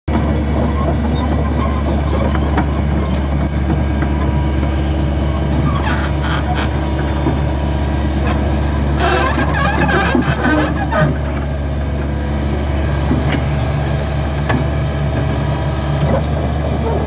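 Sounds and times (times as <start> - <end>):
excavator diesel engine humming: 0.1 - 17.0
clattering: 8.2 - 11.4.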